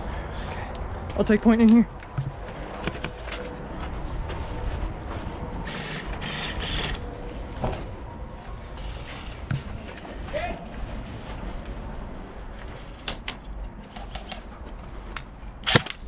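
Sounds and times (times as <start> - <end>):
steady wind: 0.0 - 16.0
rapid airsoft gunfire: 15.6 - 16.0.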